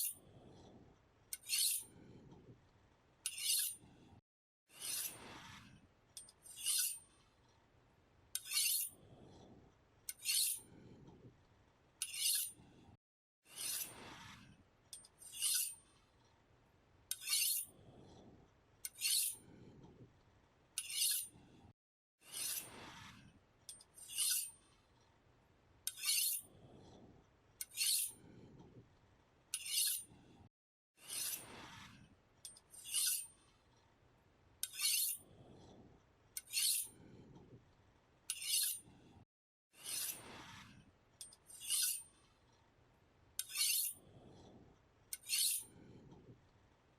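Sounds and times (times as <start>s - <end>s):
knife sharpening strokes: 1.4s - 1.9s, 3.3s - 3.8s, 4.7s - 5.2s, 6.4s - 7.0s, 8.4s - 8.9s, 10.1s - 10.6s, 12.0s - 12.6s, 13.5s - 14.0s, 15.2s - 15.8s, 17.1s - 17.7s, 18.9s - 19.4s, 20.8s - 21.3s, 22.3s - 22.7s, 24.0s - 24.6s, 25.9s - 26.4s, 27.6s - 28.2s, 29.6s - 30.1s, 31.0s - 31.5s, 32.7s - 33.3s, 34.6s - 35.2s, 36.4s - 36.9s, 38.3s - 38.8s, 39.8s - 40.3s, 41.5s - 42.1s, 43.4s - 44.0s, 45.2s - 45.7s.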